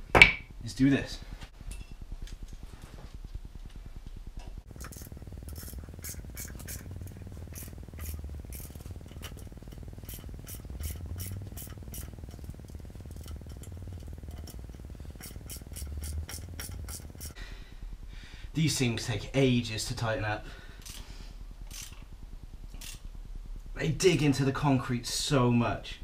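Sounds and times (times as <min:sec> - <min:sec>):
low rumble: 0:00.0 - 0:26.0
metallic clicks and scrapes: 0:04.5 - 0:17.4, 0:20.8 - 0:22.1, 0:22.7 - 0:23.1.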